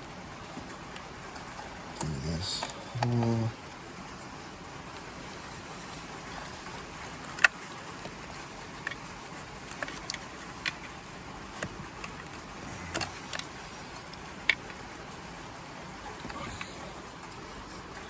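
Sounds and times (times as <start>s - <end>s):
faint hiss: 1.6s - 9.5s.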